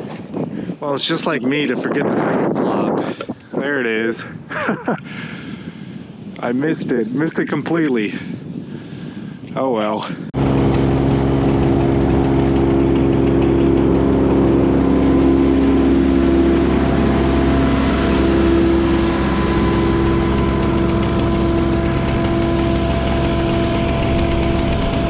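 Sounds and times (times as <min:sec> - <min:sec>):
large engine humming: 0:10.4 - 0:25.0.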